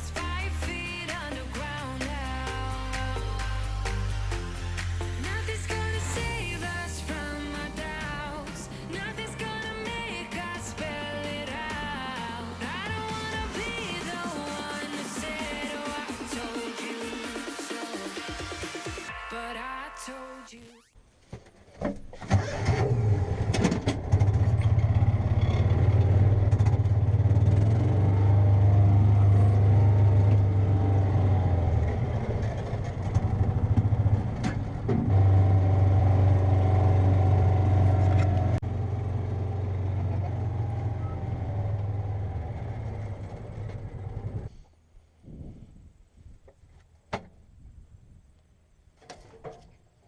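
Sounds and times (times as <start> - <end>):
vehicle engine running: 23.2 - 44.5.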